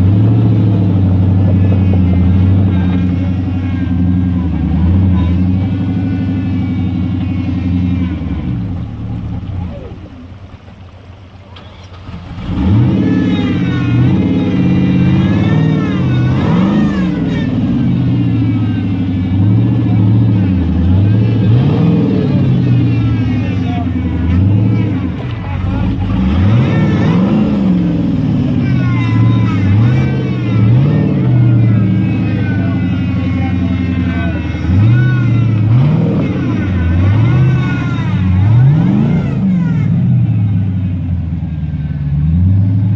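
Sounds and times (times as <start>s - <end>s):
engine revving: 0.0s - 10.4s, 11.6s - 42.9s
turbo whine: 12.6s - 41.9s.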